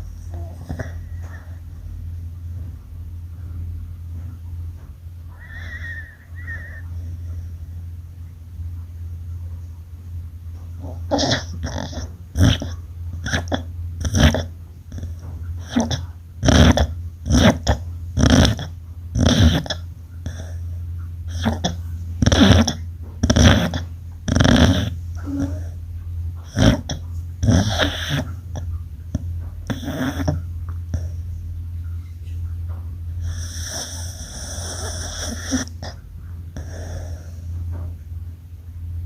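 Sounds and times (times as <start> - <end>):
dog snoring: 0.0 - 1.7, 5.3 - 7.6, 10.7 - 25.8, 26.4 - 31.2, 33.2 - 37.9
steady low hum: 0.0 - 39.0.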